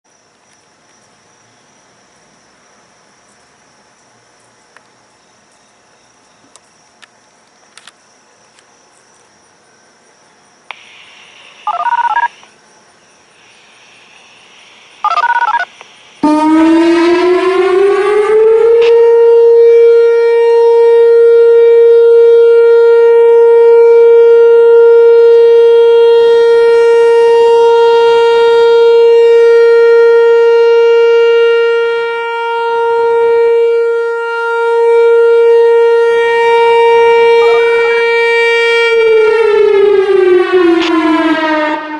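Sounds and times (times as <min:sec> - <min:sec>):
faint outdoor background: 0:00.0 - 0:41.9
electronic warning siren: 0:11.4 - 0:12.5, 0:15.0 - 0:41.9
two-tone siren bursts: 0:15.0 - 0:41.9.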